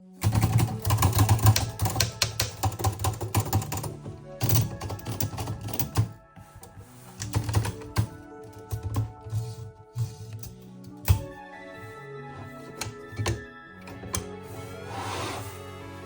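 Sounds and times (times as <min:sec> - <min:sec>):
background music: 0:00.0 - 0:16.0
typewriter key strikes: 0:00.2 - 0:06.2.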